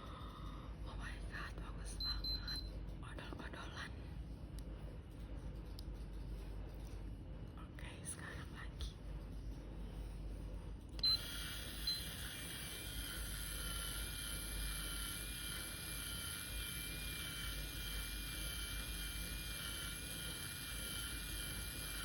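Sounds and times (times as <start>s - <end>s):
small motor whirring: 10.9s - 22.0s.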